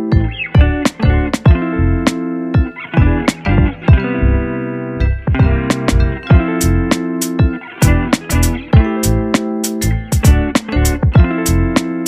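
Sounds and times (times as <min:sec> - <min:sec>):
guitar-led music with drums: 0:00.0 - 0:12.0.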